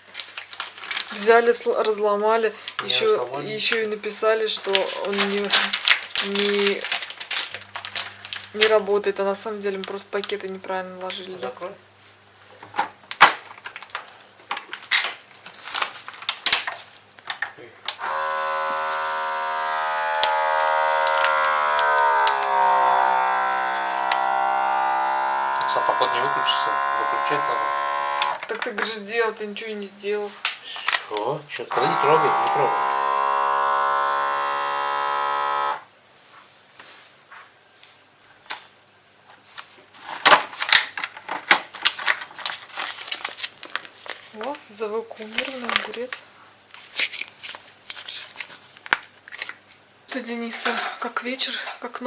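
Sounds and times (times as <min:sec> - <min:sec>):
plastic bag crackling: 0:00.0 - 0:01.5, 0:04.6 - 0:08.8, 0:41.7 - 0:44.6, 0:45.2 - 0:46.2
compressor pump humming: 0:18.0 - 0:28.4, 0:31.7 - 0:35.8.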